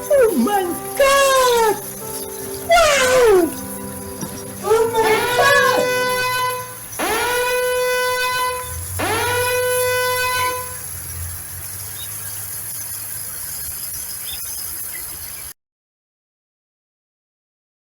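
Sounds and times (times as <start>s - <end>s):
steady hiss: 0.0s - 15.5s
long horn-like blasts: 0.7s - 10.9s.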